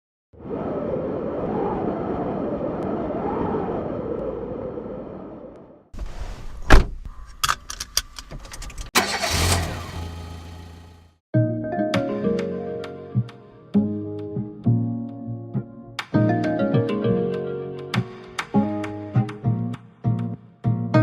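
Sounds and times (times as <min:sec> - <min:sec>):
vehicle engine running: 0:09.1 - 0:11.2.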